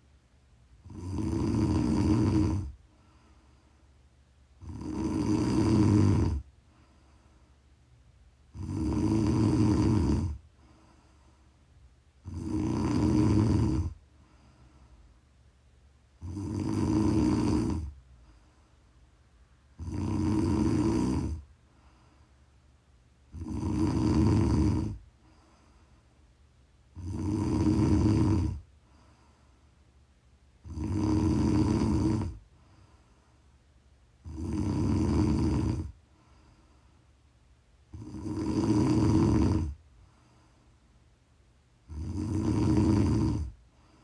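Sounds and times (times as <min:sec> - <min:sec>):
quiet breaths: 0:00.0 - 0:44.0
woman snoring: 0:00.8 - 0:02.8, 0:04.6 - 0:06.5, 0:08.5 - 0:10.4, 0:12.2 - 0:14.0, 0:16.2 - 0:18.0, 0:19.8 - 0:21.5, 0:23.3 - 0:25.0, 0:26.9 - 0:28.7, 0:30.6 - 0:32.4, 0:34.2 - 0:36.0, 0:37.9 - 0:39.8, 0:41.8 - 0:43.6.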